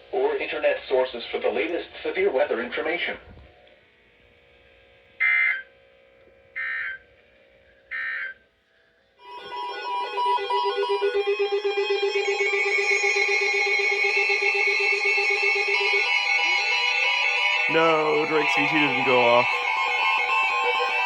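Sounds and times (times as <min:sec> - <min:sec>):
electronic alarm tone: 0:05.2 - 0:05.6, 0:06.6 - 0:07.0, 0:07.9 - 0:08.4, 0:09.2 - 0:21.0.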